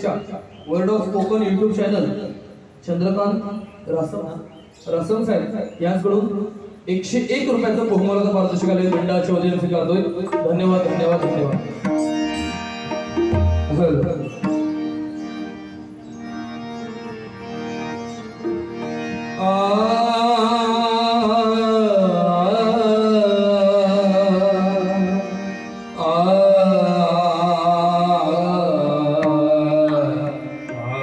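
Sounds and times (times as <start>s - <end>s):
harmonium held notes: 6.3s - 31.0s
person singing: 18.0s - 31.0s.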